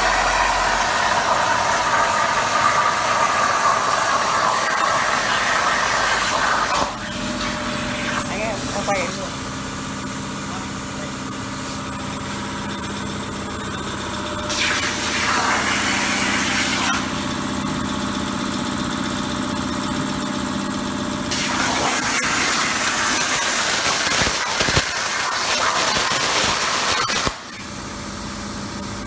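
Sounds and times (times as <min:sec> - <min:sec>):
plasma torch hissing: 0:00.0 - 0:09.3, 0:14.5 - 0:17.2, 0:21.3 - 0:28.3
machine hum: 0:00.0 - 0:29.0.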